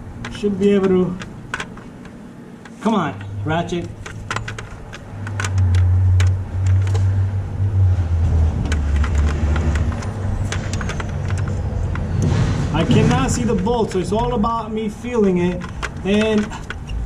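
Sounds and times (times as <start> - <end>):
ratchet clicking: 8.6 - 12.2, 15.0 - 17.0.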